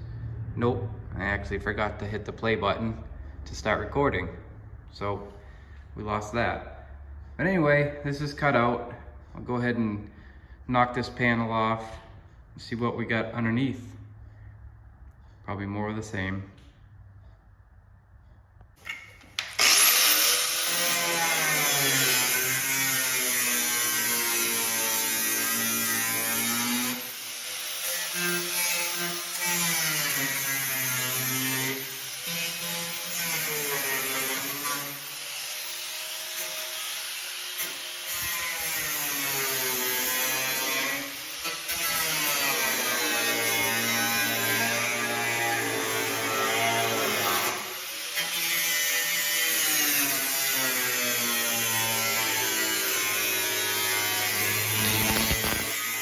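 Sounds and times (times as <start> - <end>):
power tool working sheet metal: 18.8 - 56.0.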